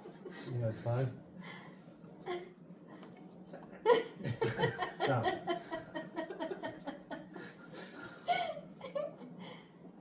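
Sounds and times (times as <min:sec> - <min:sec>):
people laughing: 0:03.9 - 0:09.3.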